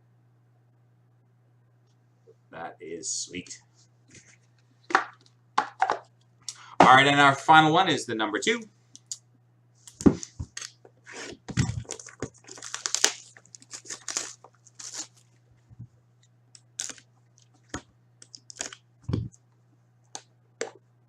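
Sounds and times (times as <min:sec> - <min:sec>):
wrapper tearing and crinkling: 0:10.5 - 0:10.8, 0:11.5 - 0:15.4, 0:16.6 - 0:17.6, 0:18.3 - 0:18.8.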